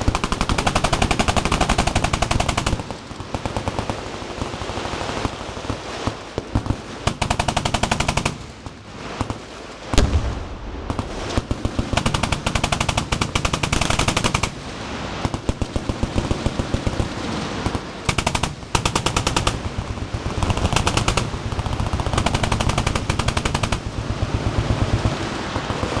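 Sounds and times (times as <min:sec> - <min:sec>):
machine guns firing in bursts: 0:00.0 - 0:10.2, 0:10.9 - 0:26.0
sharp loud boom: 0:09.9 - 0:11.4.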